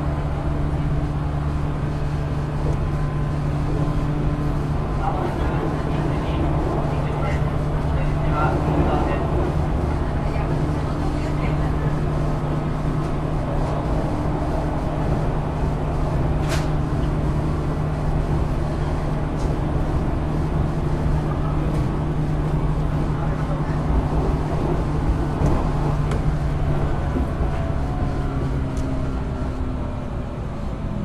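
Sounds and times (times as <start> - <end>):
traction motors humming: 0.0 - 31.0
wheel-on-rail rumble: 0.0 - 31.0.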